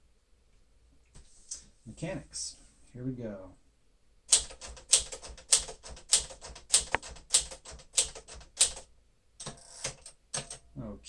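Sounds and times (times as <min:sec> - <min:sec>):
manual typewriter typing: 0:04.3 - 0:10.6.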